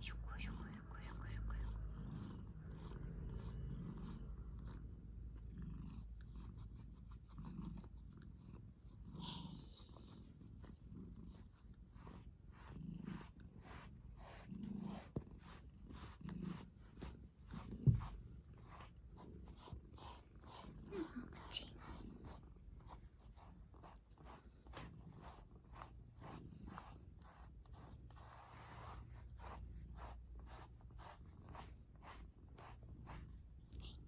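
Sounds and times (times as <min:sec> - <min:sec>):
cat purring: 0:00.0 - 0:34.0
thump: 0:17.8 - 0:18.2
faint kneading ticks: 0:33.6 - 0:34.0.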